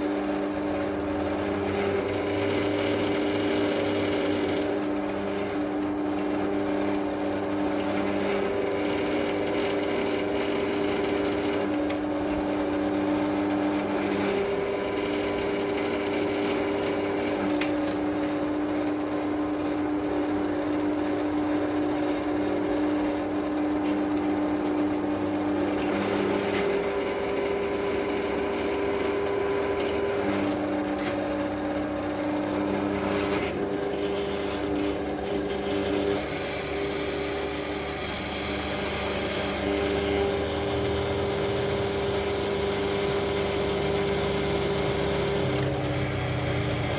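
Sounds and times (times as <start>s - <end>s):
motor hum: 0.0s - 46.9s
drill press cutting steel: 32.4s - 46.9s.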